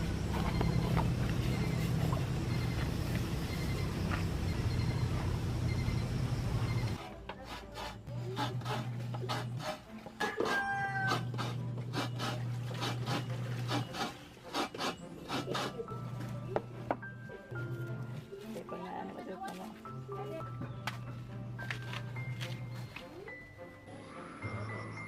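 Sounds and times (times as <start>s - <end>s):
low hum: 0.0s - 7.0s
rasping scraping strokes: 7.0s - 15.9s.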